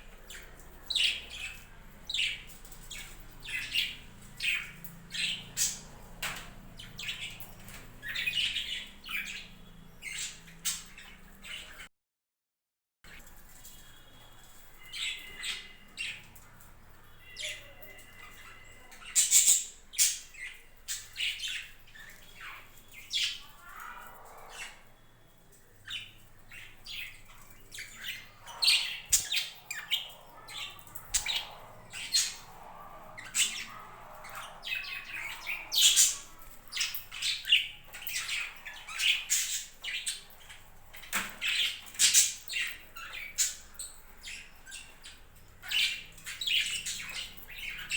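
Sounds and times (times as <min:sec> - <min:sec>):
budgerigars chattering: 0:00.2 - 0:05.9, 0:17.2 - 0:24.9, 0:25.8 - 0:47.9.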